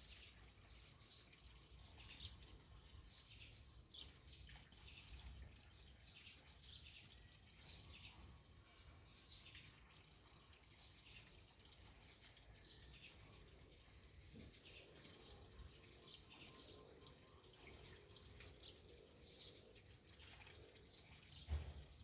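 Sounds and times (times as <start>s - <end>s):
faint outdoor ambience: 0.0s - 22.0s.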